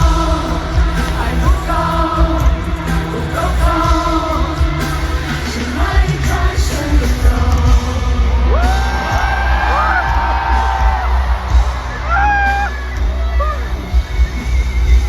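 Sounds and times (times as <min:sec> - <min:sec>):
woman singing: 0:00.0 - 0:09.0
live pop music with heavy bass: 0:00.0 - 0:15.0
high crowd cries: 0:07.6 - 0:15.0.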